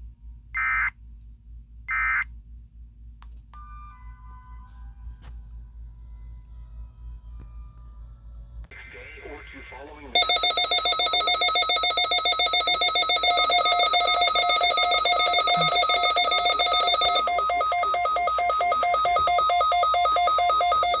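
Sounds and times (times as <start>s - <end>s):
pulsing electronic alarm warble: 10.2s - 21.0s.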